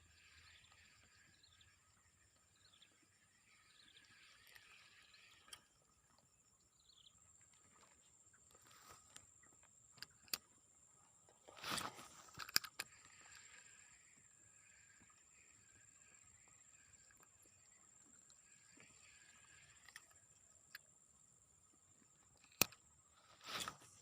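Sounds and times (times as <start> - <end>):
bird chirps: 0.0 - 9.6
high insect drone: 11.5 - 24.0
sharp clicks: 22.4 - 22.8.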